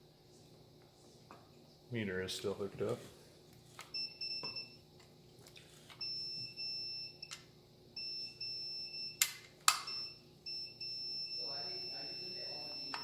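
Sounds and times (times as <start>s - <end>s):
multimeter continuity beeps: 3.9s - 4.9s, 6.0s - 7.4s, 8.0s - 13.0s.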